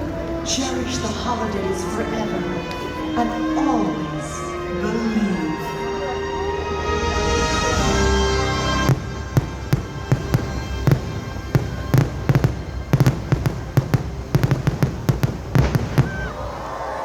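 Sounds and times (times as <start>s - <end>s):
faint music: 0.0s - 17.0s
fireworks bangs and crackles: 8.3s - 17.0s
deep rumble: 8.8s - 17.0s.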